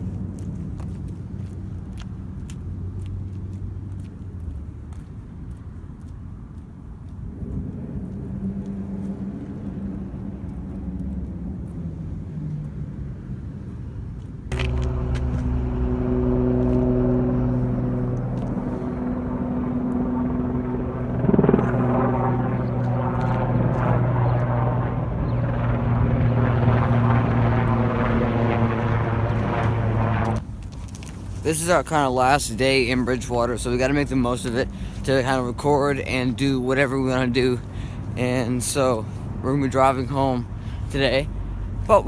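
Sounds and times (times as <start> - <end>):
motor humming: 14.5 - 30.4.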